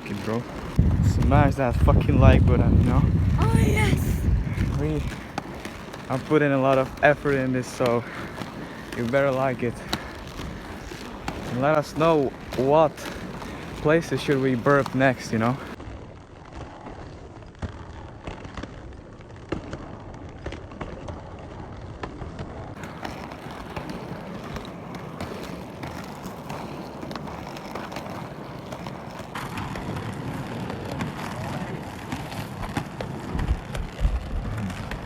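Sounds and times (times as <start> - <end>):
roller skate wheels rolling: 0.0 - 35.0.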